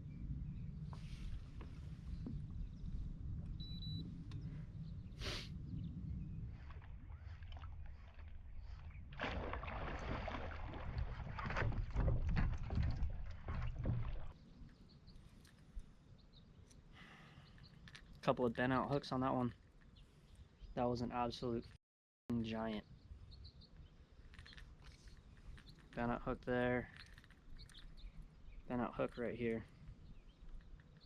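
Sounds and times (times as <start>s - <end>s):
wind rumble on microphone: 0.0s - 16.4s, 22.8s - 31.0s
water splashing around kayak: 6.6s - 14.4s.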